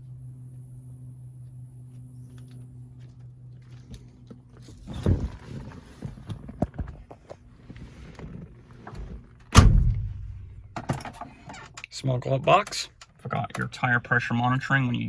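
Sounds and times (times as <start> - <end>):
handling clicks and rustles: 1.9 - 13.8
thump: 9.5 - 11.1.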